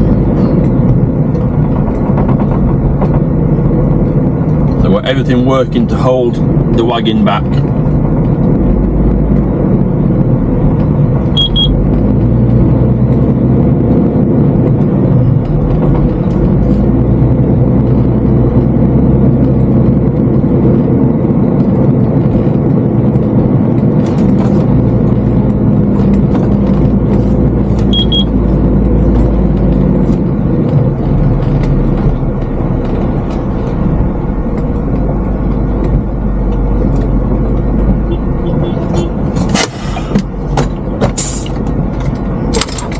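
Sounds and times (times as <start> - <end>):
truck diesel engine drone: 0.0 - 42.9
short high electronic beeps: 27.9 - 28.3.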